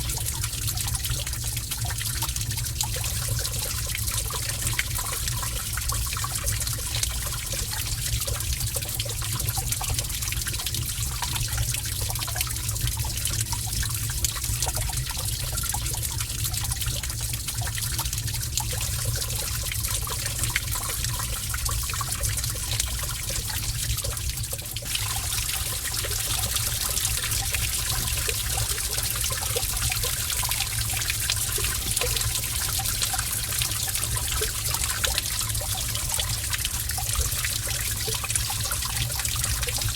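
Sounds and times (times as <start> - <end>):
water drips and splashes: 0.0 - 39.9
water trickling in a cave: 0.0 - 39.9.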